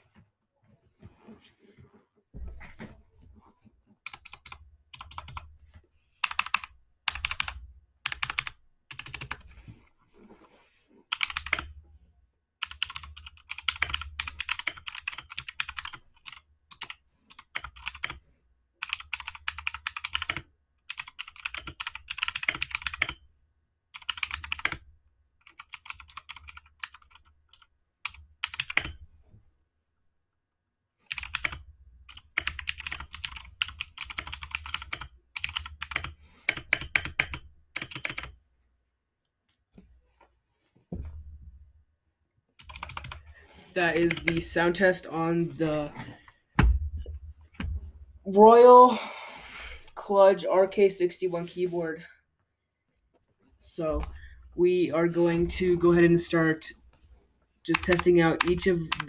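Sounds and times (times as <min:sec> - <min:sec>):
mechanical keyboard typing: 0:04.0 - 0:05.5, 0:06.2 - 0:09.5, 0:11.1 - 0:11.7, 0:12.6 - 0:18.2, 0:18.8 - 0:23.2, 0:24.0 - 0:24.8, 0:25.4 - 0:29.0, 0:31.1 - 0:38.3, 0:42.6 - 0:43.2, 0:43.8 - 0:44.6, 0:57.7 - 0:59.0.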